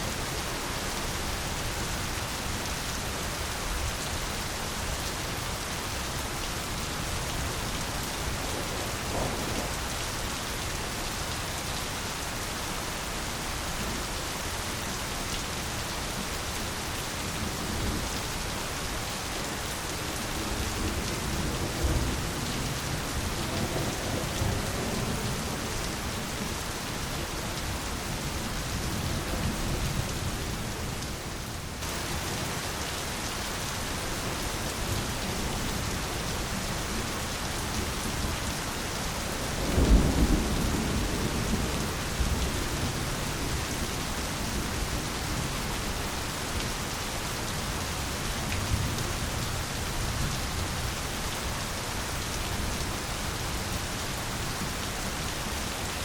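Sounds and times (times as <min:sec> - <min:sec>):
heavy rain falling: 0:00.0 - 0:56.0
thunder rumbling: 0:08.3 - 0:09.9.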